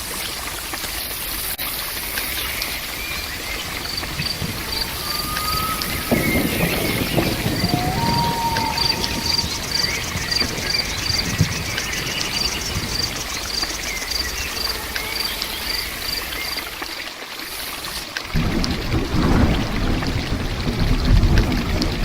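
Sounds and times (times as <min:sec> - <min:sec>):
insects chirping: 0:00.0 - 0:18.6
constant hiss: 0:00.0 - 0:22.0.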